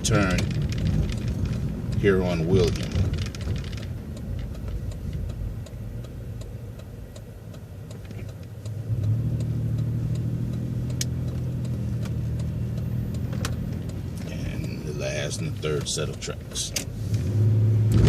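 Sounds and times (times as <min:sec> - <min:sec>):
bus engine droning: 0:00.0 - 0:18.0
turn signal ticking: 0:00.0 - 0:18.0.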